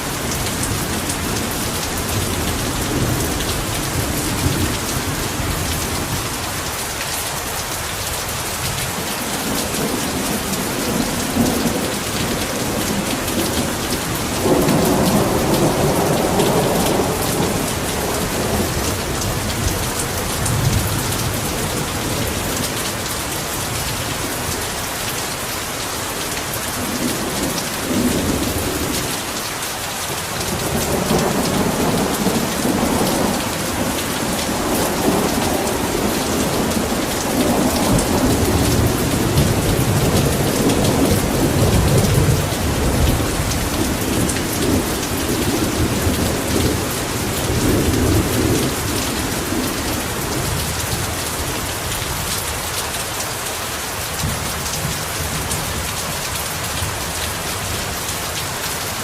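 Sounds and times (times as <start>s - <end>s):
heavy rain falling: 0.0s - 59.0s
thunder rumbling: 30.5s - 51.2s.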